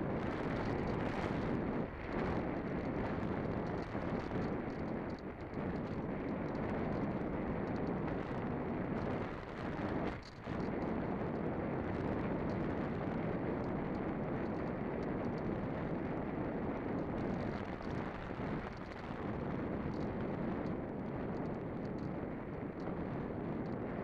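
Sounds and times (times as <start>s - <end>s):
wind rushing over microphone: 0.0s - 24.0s.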